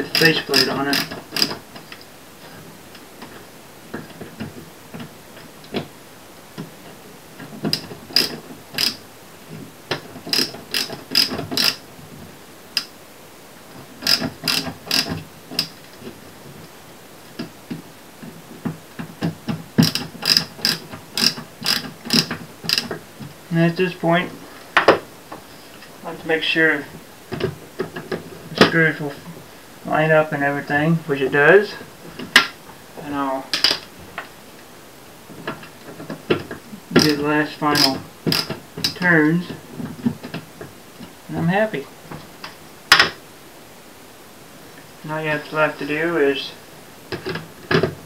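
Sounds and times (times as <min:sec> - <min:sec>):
ratchet screwdriver clicking: 0:00.1 - 0:01.6, 0:07.7 - 0:09.0, 0:10.3 - 0:11.8, 0:14.0 - 0:15.7, 0:19.8 - 0:22.9, 0:37.8 - 0:38.5.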